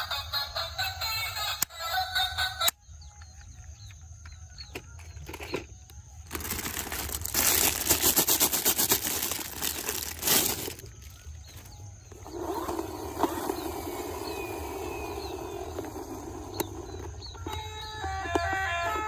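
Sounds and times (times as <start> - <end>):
crinkling crackling noise: 3.2 - 12.2.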